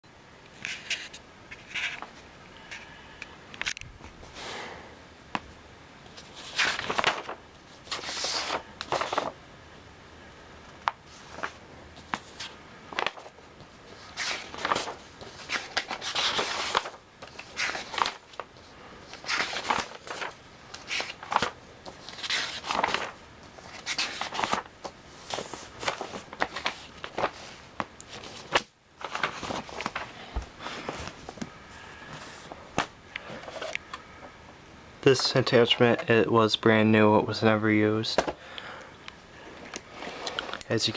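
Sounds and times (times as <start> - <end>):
handling rustles and scrapes: 0.6 - 2.9, 11.0 - 34.0.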